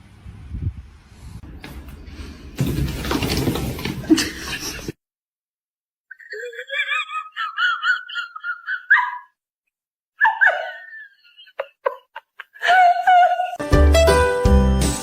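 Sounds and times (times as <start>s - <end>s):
high-pitched giggling laughter: 6.1s - 9.4s, 10.2s - 13.6s.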